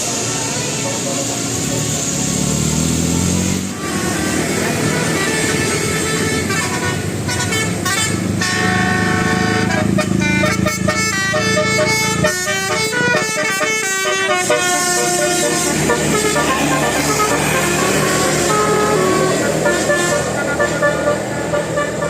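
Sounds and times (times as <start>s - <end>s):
bus musical horn melody: 0.0s - 2.1s, 2.8s - 22.0s.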